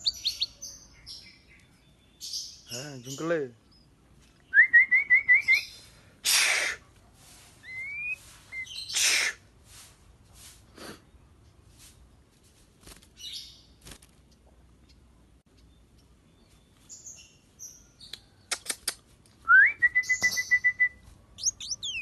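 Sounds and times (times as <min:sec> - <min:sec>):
harsh rasping bird calls: 0:00.0 - 0:01.5, 0:05.6 - 0:06.9, 0:07.6 - 0:09.5, 0:21.4 - 0:22.0
bird singing whistled notes: 0:00.0 - 0:03.8, 0:04.4 - 0:05.8, 0:07.6 - 0:09.0, 0:19.5 - 0:22.0.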